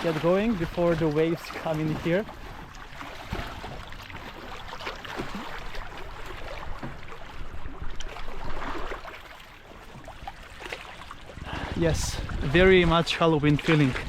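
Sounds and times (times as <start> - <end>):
lake waves lapping on shore: 0.0 - 14.0
wind rumbling on microphone: 11.0 - 14.0.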